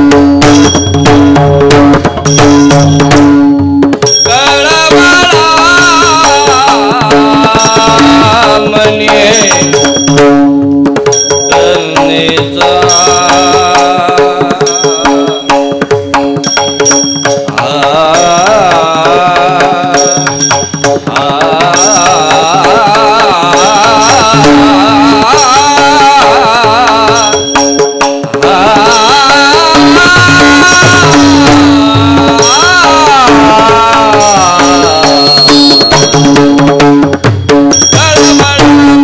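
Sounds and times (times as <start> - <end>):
hand drum strokes: 0.0 - 39.0
man singing long ornamented notes: 4.2 - 10.1, 11.5 - 15.8, 17.4 - 36.7, 37.9 - 39.0.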